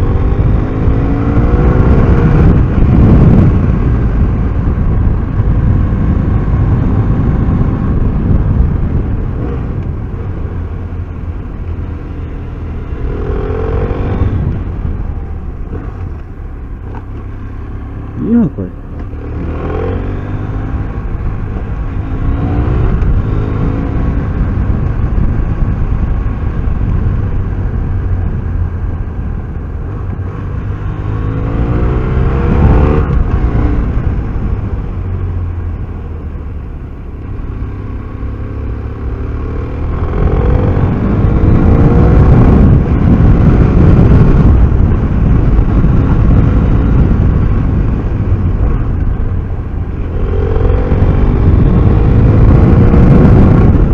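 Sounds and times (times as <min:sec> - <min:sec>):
motorcycle engine revving: 0:00.0 - 0:29.0, 0:29.6 - 0:35.7, 0:37.2 - 0:53.9.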